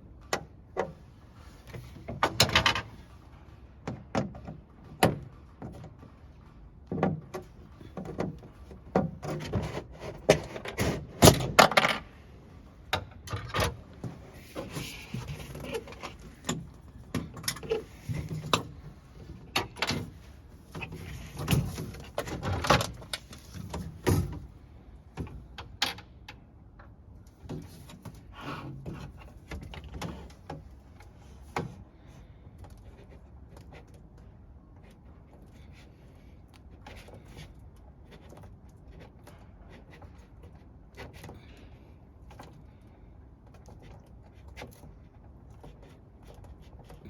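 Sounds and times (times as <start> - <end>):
hard parts clicking and rattling: 1.6 - 31.8.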